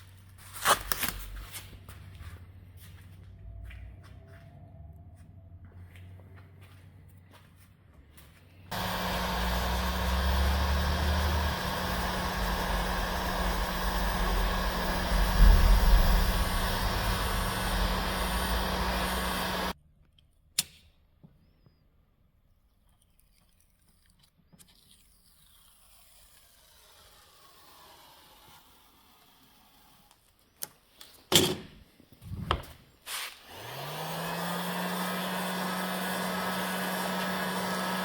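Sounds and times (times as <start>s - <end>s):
workshop machine humming and hissing: 8.7s - 19.8s, 33.5s - 38.0s.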